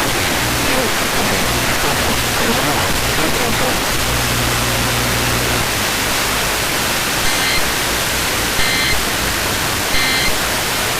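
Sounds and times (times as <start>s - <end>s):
radio static: 0.0s - 6.0s, 7.2s - 7.8s, 8.6s - 9.0s, 9.9s - 10.4s
low hum: 0.0s - 6.6s
buzzy data burst tones: 7.2s - 7.7s, 8.6s - 9.0s, 9.9s - 10.4s.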